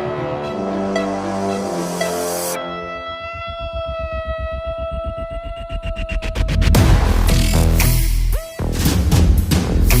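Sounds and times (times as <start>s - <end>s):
electronic synth music: 0.0s - 8.7s.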